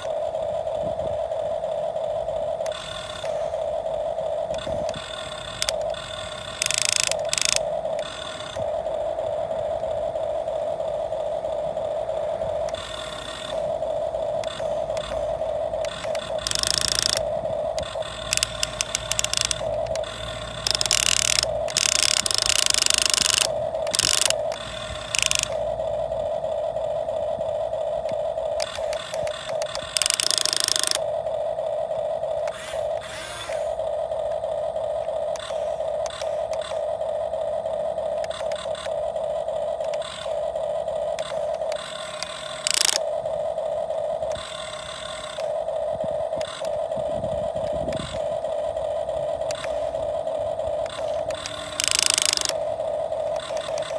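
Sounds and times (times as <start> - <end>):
small electric motors whirring: 0.0 - 53.9
harsh rattling and scraping: 4.5 - 8.6, 14.4 - 25.6.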